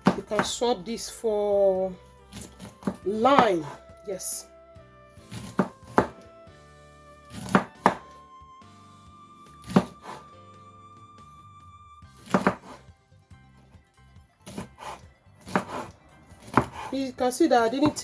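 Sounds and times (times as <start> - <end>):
knife cutting on chopping board: 0.0 - 0.6, 2.3 - 3.8, 5.2 - 6.3, 7.3 - 8.1, 9.6 - 10.3, 12.2 - 12.9, 14.4 - 17.0, 17.6 - 18.0
quiet background music: 0.0 - 18.0.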